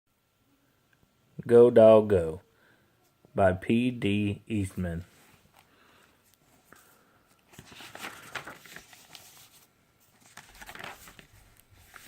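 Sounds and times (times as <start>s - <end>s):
paper pages rustling: 5.0s - 12.0s.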